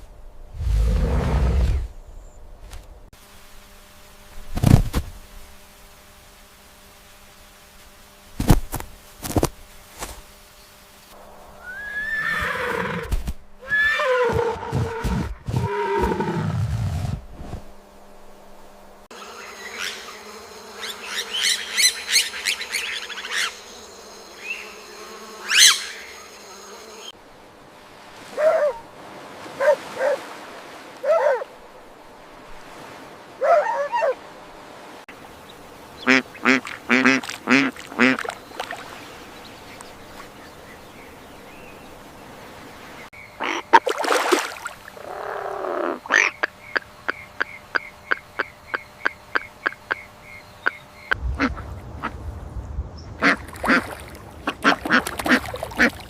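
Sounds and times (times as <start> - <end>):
animal calls sliding in pitch: 11.6 - 17.2.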